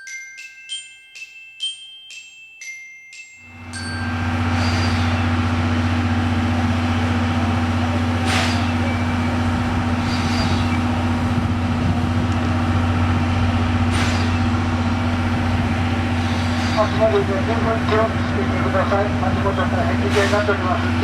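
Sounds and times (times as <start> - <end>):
train drone: 3.5 - 21.0
rushes of noise: 4.1 - 18.0.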